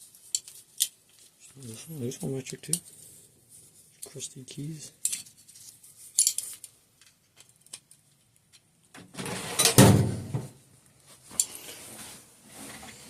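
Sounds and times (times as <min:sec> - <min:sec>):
metal hex keys clicking and rattling: 0:06.1 - 0:08.0.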